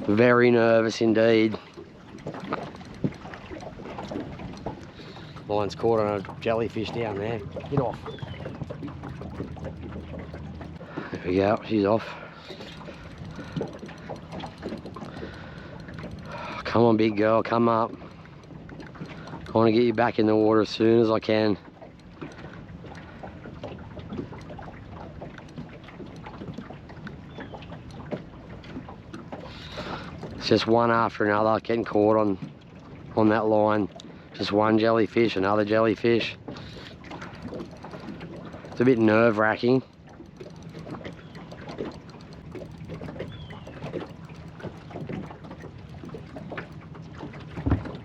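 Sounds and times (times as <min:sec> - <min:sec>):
steady low hum: 0:00.0 - 0:20.2, 0:36.6 - 0:48.0
water splashing against boat: 0:00.0 - 0:48.0.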